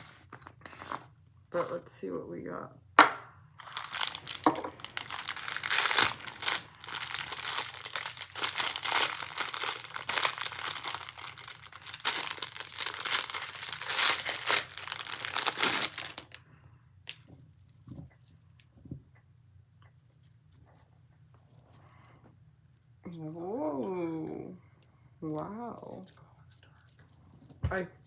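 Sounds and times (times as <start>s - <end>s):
packaging crinkling and tearing: 3.6s - 16.4s.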